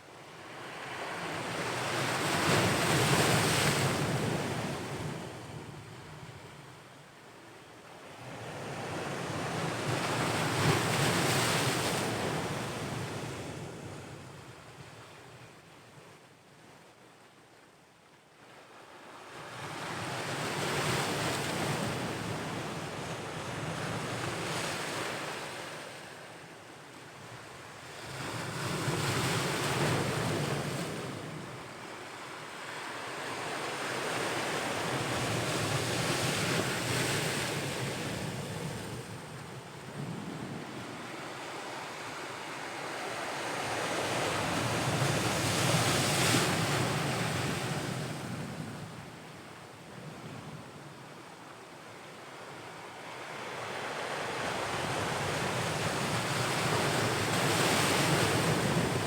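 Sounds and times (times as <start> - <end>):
ocean waves breaking on shore: 53.0 - 59.0.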